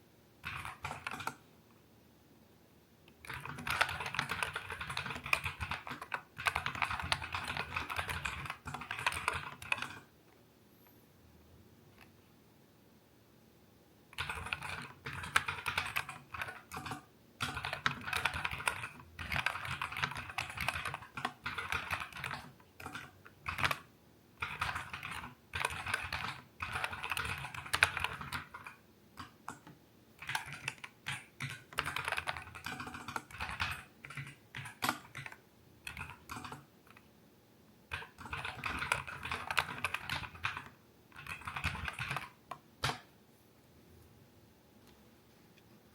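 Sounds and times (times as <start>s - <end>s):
mechanical keyboard typing: 0.4s - 1.4s, 3.2s - 10.1s, 14.2s - 37.1s, 37.9s - 43.1s.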